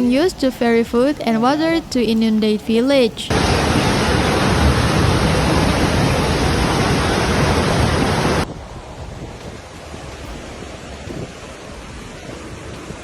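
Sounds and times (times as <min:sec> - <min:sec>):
loud steady rushing noise: 0:03.2 - 0:13.0.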